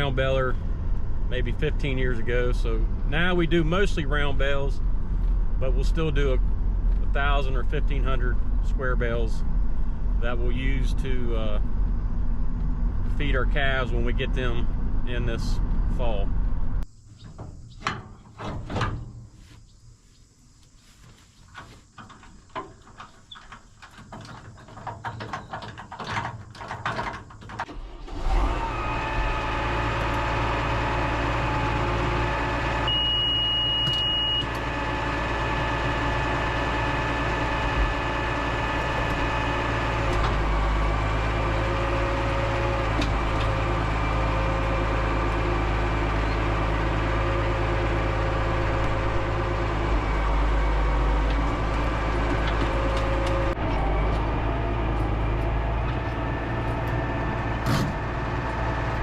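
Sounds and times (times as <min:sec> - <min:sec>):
tractor engine running: 0:00.0 - 0:19.6, 0:20.6 - 0:59.0
clicks and knocks: 0:21.5 - 0:27.7
high steady beep: 0:32.9 - 0:34.4.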